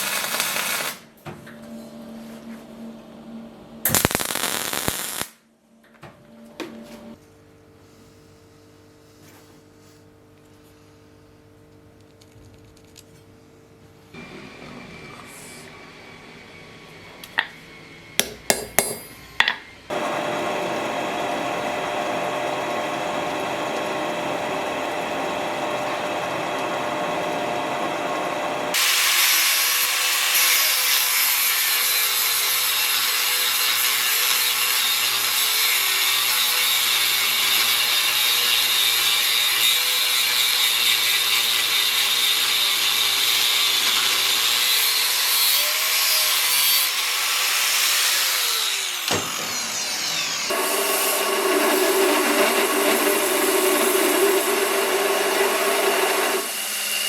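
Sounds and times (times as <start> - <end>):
power tool running: 14.2 - 57.0.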